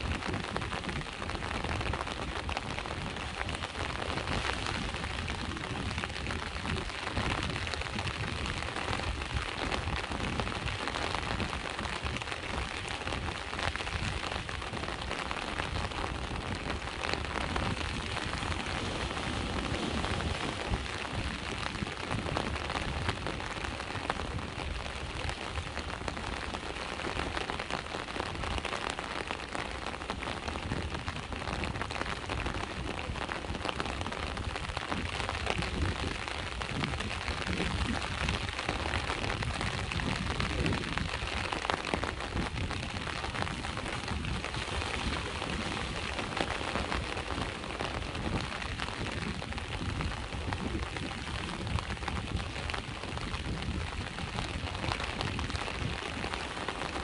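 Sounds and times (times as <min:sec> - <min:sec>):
rain pattering: 0:00.0 - 0:57.0
sea waves: 0:11.0 - 0:30.6, 0:41.1 - 0:49.0.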